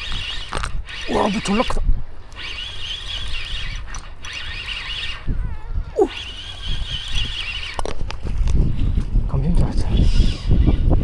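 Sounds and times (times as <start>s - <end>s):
fishing reel whirring: 0.0s - 8.2s.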